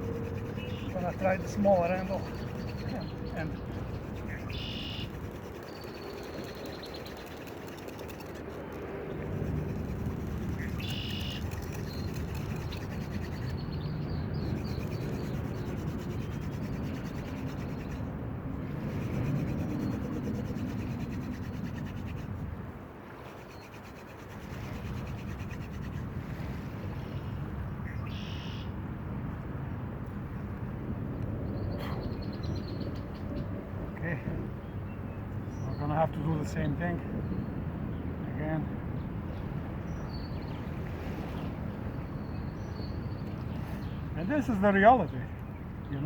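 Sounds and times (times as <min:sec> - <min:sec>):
bird chirping: 0:00.0 - 0:08.4, 0:09.5 - 0:18.0
wooden spindle rubbing on board: 0:00.0 - 0:13.6, 0:14.4 - 0:18.1, 0:18.8 - 0:22.5, 0:23.2 - 0:26.1.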